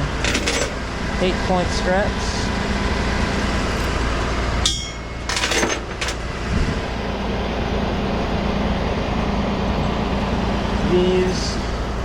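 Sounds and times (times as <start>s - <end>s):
truck engine idling: 0.0s - 12.0s
metal hooks clinking and rattling: 0.2s - 0.8s, 4.6s - 6.3s.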